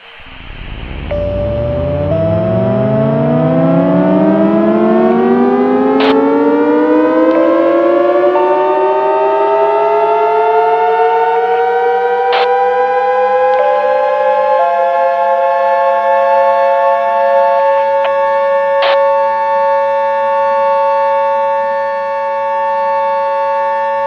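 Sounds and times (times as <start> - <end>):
emergency siren winding up: 0.0 - 24.0
steady alarm tones: 0.0 - 24.0
sharp clicks: 6.0 - 6.2, 12.3 - 12.6.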